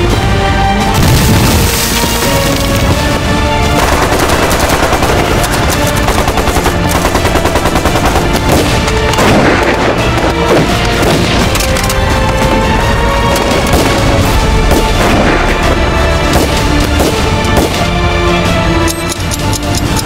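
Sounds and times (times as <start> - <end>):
dramatic soundtrack music: 0.0 - 20.0
rapid automatic gunfire: 3.7 - 11.3.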